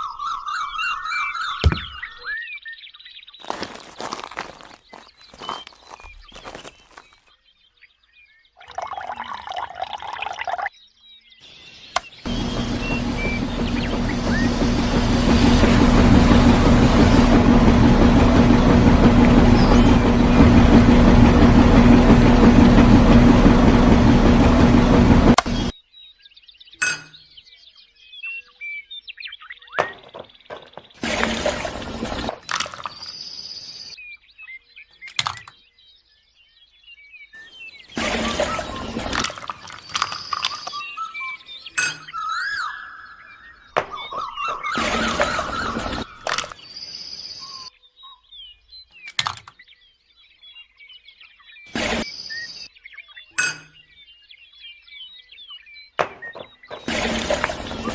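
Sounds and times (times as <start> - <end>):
small birds chirping: 0.0 - 18.0, 25.4 - 57.9
loud noisy burst: 12.3 - 25.7, 29.9 - 32.4, 56.0 - 57.9
short bursts of noise: 29.8 - 33.1, 37.9 - 40.8, 51.7 - 52.1, 56.0 - 57.9
sharp knock: 43.8 - 44.5.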